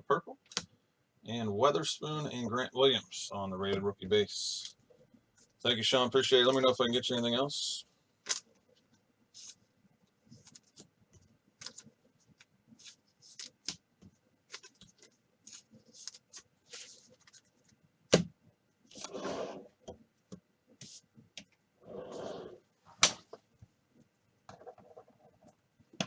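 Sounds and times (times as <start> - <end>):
rustling: 11.6 - 17.8.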